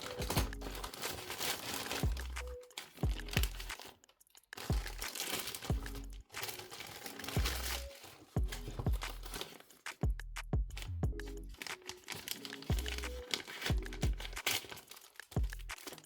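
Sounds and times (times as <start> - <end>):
crinkling and rustling: 0.0 - 10.1, 10.7 - 16.0
lo-fi hip-hop music: 0.0 - 16.0.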